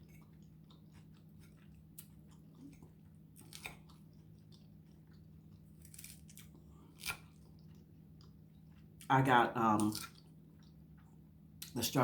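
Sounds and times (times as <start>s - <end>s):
chewing food: 0.0s - 11.9s
low steady hum: 0.0s - 12.0s.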